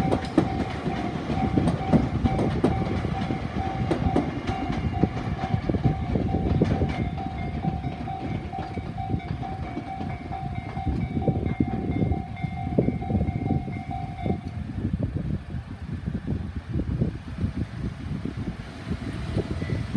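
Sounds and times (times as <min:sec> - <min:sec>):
crossing warning bell: 0:00.0 - 0:14.9, 0:19.0 - 0:19.9
train rumbling and clattering: 0:00.0 - 0:19.9.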